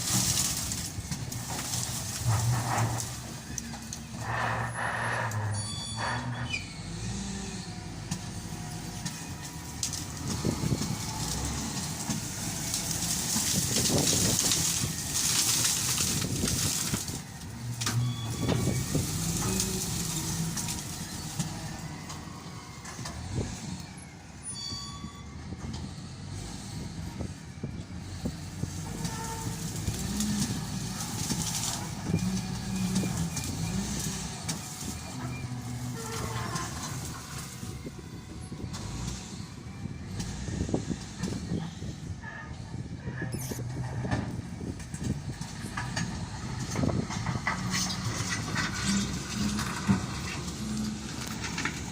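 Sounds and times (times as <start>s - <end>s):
wheel loader diesel engine running: 0.0s - 51.9s.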